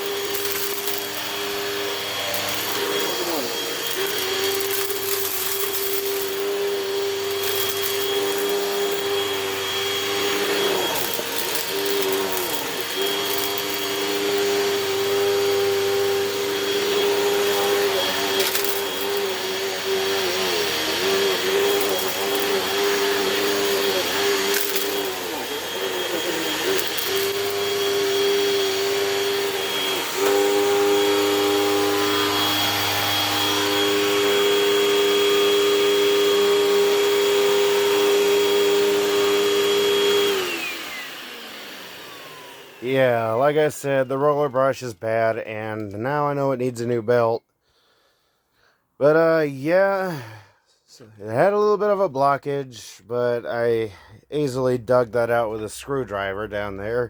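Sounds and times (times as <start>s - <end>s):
brush roll rattling: 0.0s - 30.6s
upright vacuum cleaner running: 0.0s - 44.5s.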